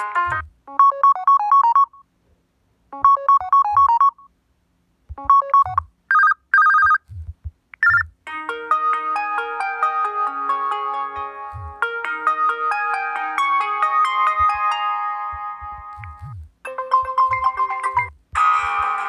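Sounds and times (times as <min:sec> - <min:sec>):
electronic ringtone melody: 0:00.0 - 0:02.0, 0:03.0 - 0:04.3, 0:05.2 - 0:07.0, 0:07.8 - 0:19.0
two-tone beeping ringtone: 0:00.0 - 0:02.0, 0:03.0 - 0:04.3, 0:05.2 - 0:07.1, 0:07.8 - 0:08.1, 0:13.2 - 0:18.2
soft low thumps: 0:07.0 - 0:08.2, 0:11.5 - 0:11.8, 0:14.4 - 0:14.6, 0:15.3 - 0:16.6.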